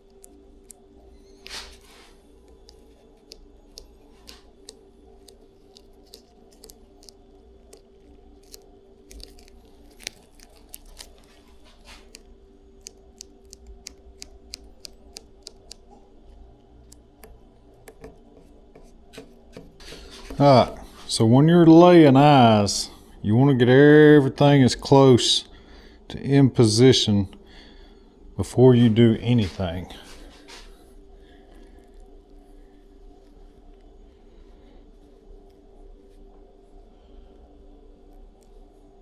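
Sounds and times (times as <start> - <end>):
steady low hum: 0.0 - 39.0
small clicks and taps: 12.8 - 16.0, 16.8 - 20.8.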